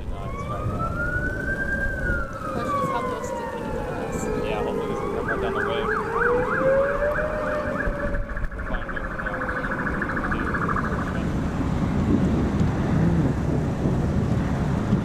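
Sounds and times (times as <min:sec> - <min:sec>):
car engine and road rumble: 0:00.0 - 0:15.0
rapid pulsing high tone: 0:02.5 - 0:11.5.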